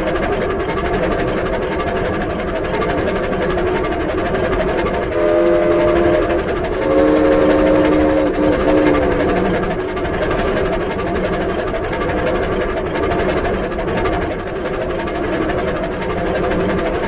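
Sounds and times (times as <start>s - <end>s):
steam train chugging: 0.0s - 17.0s
train whistle chord: 5.0s - 9.7s.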